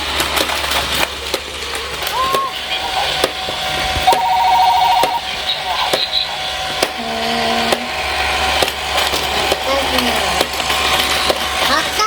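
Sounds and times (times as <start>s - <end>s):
fast pulsing beep: 4.1s - 5.8s
steady electronic tone: 4.1s - 5.9s.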